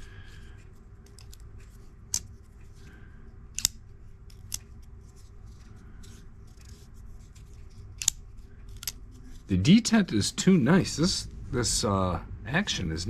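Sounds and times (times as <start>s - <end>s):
folding knife clicking: 3.5s - 4.7s, 8.0s - 9.0s.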